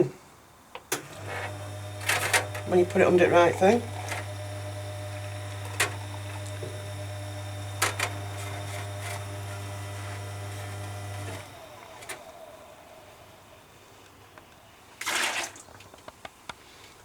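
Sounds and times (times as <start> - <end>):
coffee machine humming: 1.0 - 13.8.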